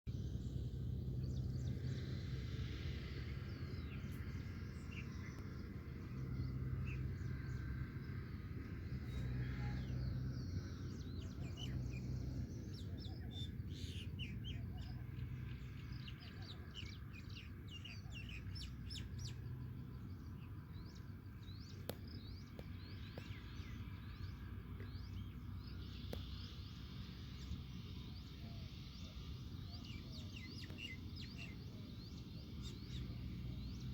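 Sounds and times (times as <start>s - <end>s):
small birds chirping: 0.1s - 33.9s.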